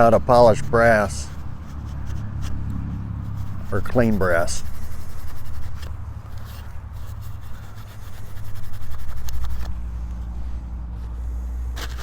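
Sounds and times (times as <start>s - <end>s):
steel wool scrubbing metal: 0.0s - 2.6s, 3.2s - 9.7s.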